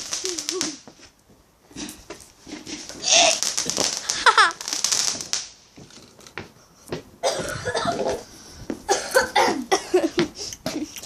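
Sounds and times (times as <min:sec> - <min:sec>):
child laughing: 0:00.2 - 0:00.8, 0:04.0 - 0:04.7, 0:09.2 - 0:11.0
child coughing: 0:03.0 - 0:03.4, 0:07.2 - 0:08.2, 0:08.9 - 0:11.0
child squealing: 0:03.0 - 0:03.5.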